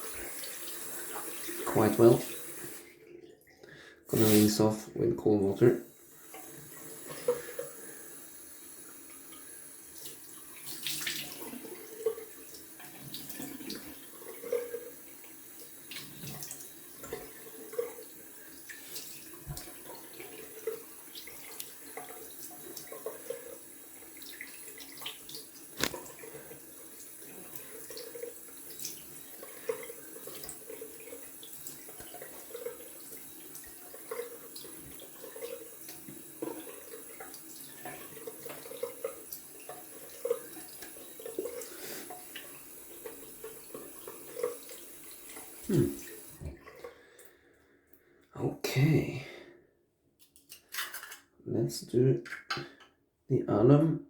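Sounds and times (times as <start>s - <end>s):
tap water running into sink: 0.0s - 47.4s
water splashing: 4.1s - 4.8s.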